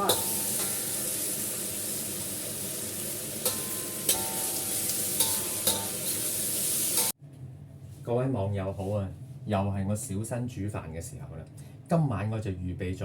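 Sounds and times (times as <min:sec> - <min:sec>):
vegetables sizzling in a wok: 0:00.0 - 0:07.2.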